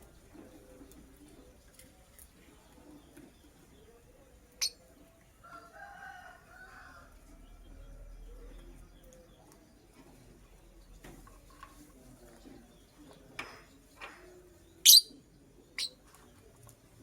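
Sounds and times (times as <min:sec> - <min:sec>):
sharp high bird chirp: 0:14.9 - 0:15.2.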